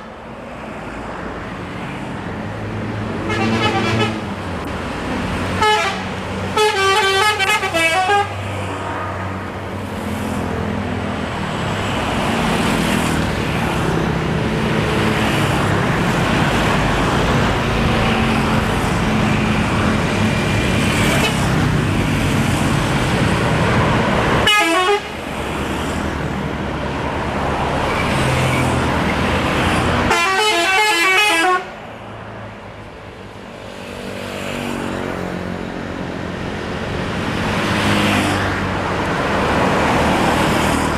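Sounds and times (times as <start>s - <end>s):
bus engines running: 0.0s - 40.9s
multi-tone bus air horns: 3.2s - 4.4s, 5.5s - 8.4s, 24.4s - 25.3s, 30.0s - 31.8s.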